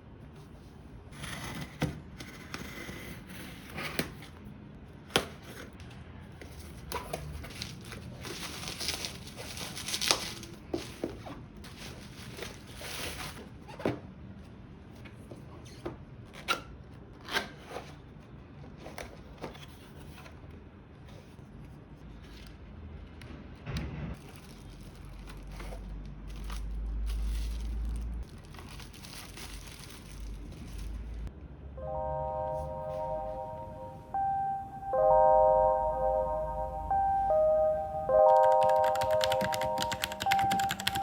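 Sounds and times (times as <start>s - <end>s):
packaging rustling and tearing: 7.1s - 11.0s, 24.2s - 31.2s.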